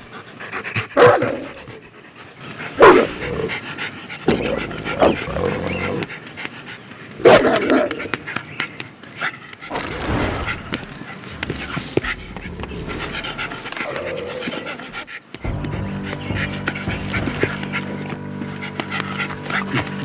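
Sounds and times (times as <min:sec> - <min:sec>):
dog panting: 0:00.0 - 0:20.0
dog calls: 0:00.8 - 0:20.0.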